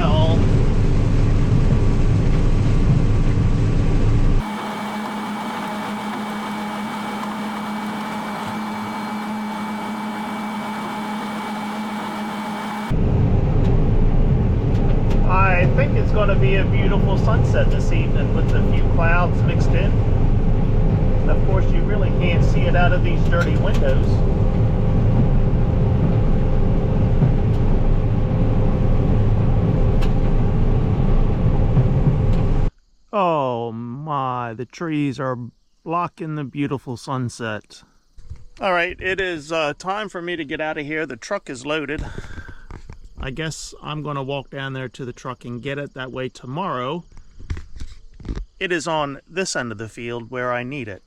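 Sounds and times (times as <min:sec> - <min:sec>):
combine harvester hum: 0:00.0 - 0:33.4
thin steady whine: 0:00.0 - 0:33.5.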